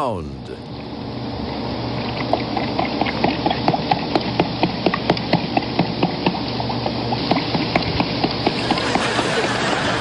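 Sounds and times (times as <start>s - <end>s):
steady low hum: 0.0s - 10.0s
rhythmic clip-clop knocks: 2.3s - 10.0s.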